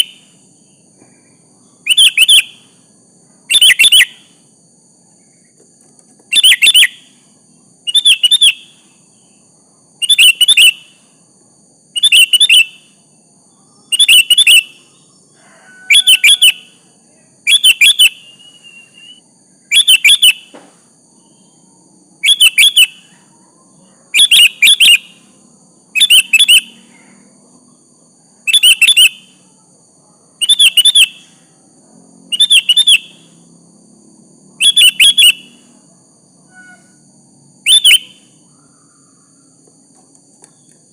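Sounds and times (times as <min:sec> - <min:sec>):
bird calling: 0:00.0 - 0:00.3, 0:01.8 - 0:02.8, 0:03.5 - 0:04.4, 0:06.2 - 0:07.2, 0:07.9 - 0:09.0, 0:10.0 - 0:11.1, 0:12.0 - 0:13.0, 0:13.7 - 0:16.8, 0:17.5 - 0:20.6, 0:22.2 - 0:25.3, 0:26.0 - 0:27.2, 0:28.5 - 0:29.5, 0:30.4 - 0:31.4, 0:32.3 - 0:33.4, 0:34.6 - 0:35.7, 0:37.6 - 0:39.6.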